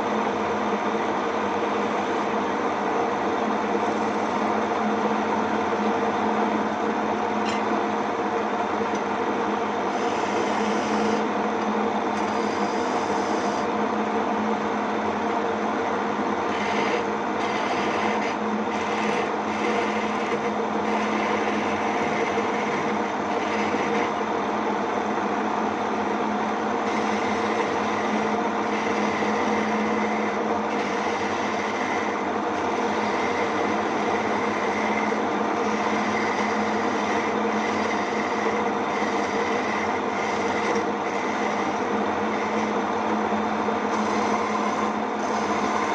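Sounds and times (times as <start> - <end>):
wood lathe motor running: 1.1 - 6.0, 9.8 - 11.3, 12.1 - 13.8, 16.4 - 24.3, 26.8 - 45.9
tool scraping spinning wood: 1.5 - 2.4, 3.6 - 4.7, 9.9 - 11.3, 12.1 - 13.7, 16.4 - 24.3, 26.8 - 45.9.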